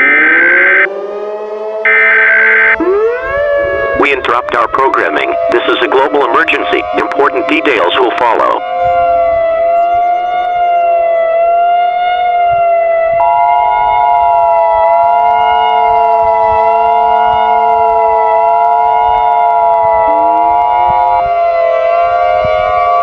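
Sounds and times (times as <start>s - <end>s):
civil defense siren: 0.0s - 23.0s
two-tone alert signal: 1.8s - 3.3s, 13.2s - 14.0s.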